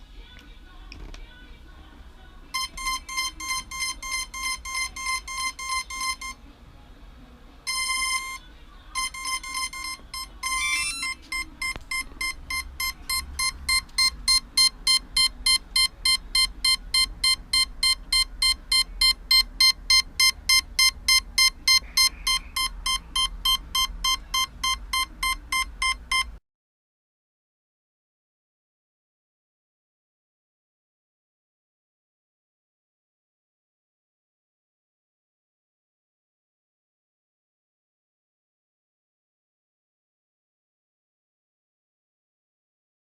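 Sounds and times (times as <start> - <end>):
short electronic beeps: 2.6 - 6.4, 7.7 - 8.4, 9.0 - 26.4.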